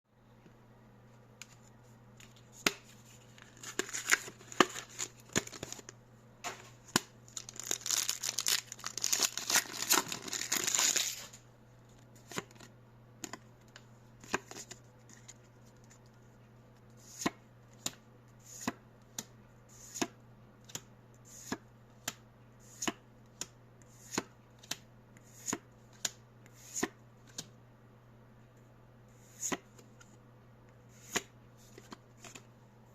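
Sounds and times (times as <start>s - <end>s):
foil wrapper tearing and crinkling: 7.3s - 11.3s.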